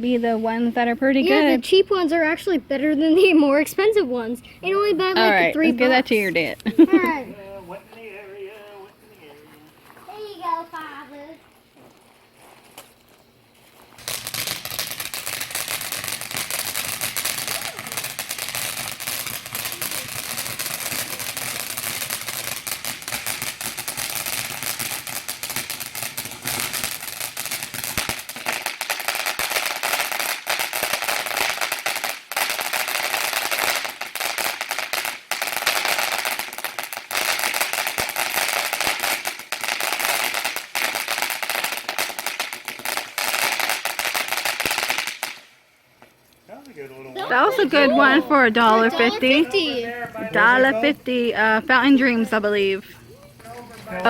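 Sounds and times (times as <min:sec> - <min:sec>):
firework spraying with crackling: 0:04.6 - 0:54.0.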